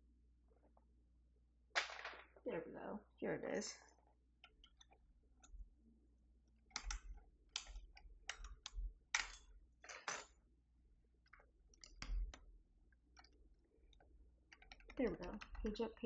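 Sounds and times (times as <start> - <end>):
keycaps clicking onto switches: 6.7 - 10.3.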